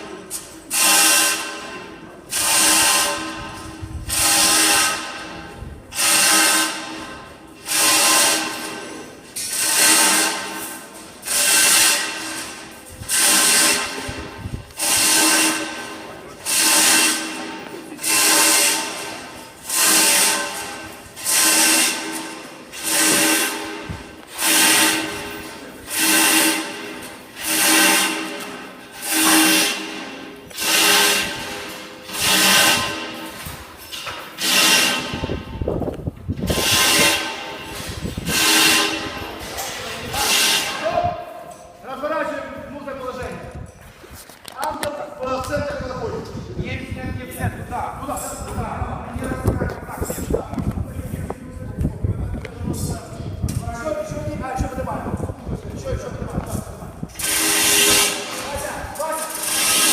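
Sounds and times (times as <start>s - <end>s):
ratchet-and-chain hoist strokes: 0.0s - 40.9s, 57.1s - 59.9s.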